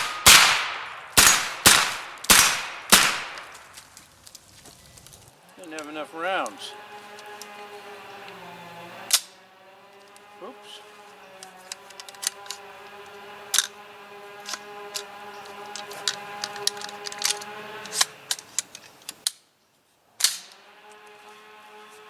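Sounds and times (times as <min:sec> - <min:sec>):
steady hum: 0:00.0 - 0:03.9
rifle metallic clicks and clacks: 0:15.7 - 0:19.4.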